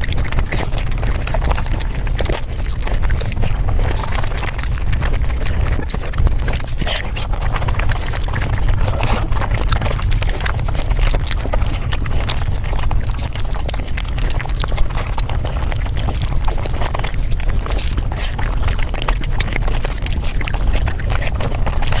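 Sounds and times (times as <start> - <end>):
chewing and mouth smacking: 0.0 - 22.0
steady low rumble: 7.5 - 13.8.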